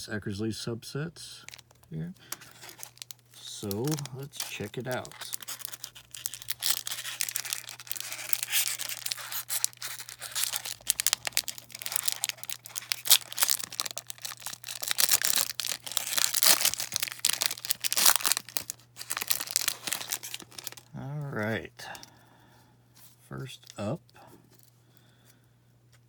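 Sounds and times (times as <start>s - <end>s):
low electrical hum: 0.0s - 26.0s
wrapper rustling and ripping: 1.4s - 20.9s.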